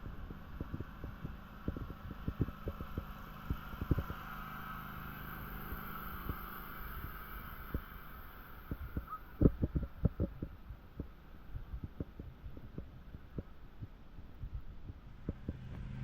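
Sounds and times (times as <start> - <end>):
steady background hum: 0.0 - 16.0.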